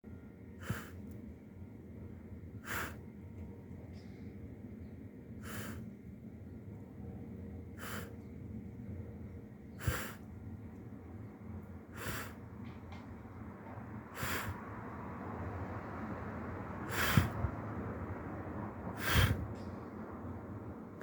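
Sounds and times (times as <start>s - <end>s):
faint low hum: 0.1s - 21.0s
breathy exhales: 0.6s - 1.1s, 2.6s - 3.0s, 5.4s - 5.9s, 7.8s - 8.2s, 9.8s - 10.2s, 11.9s - 12.4s, 14.1s - 14.6s, 16.8s - 17.5s, 18.9s - 19.6s.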